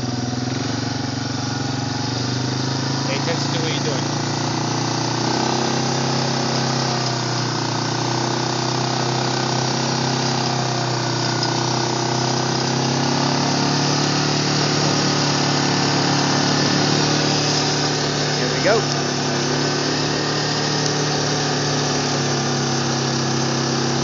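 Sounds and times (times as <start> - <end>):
engine droning: 0.0 - 24.0.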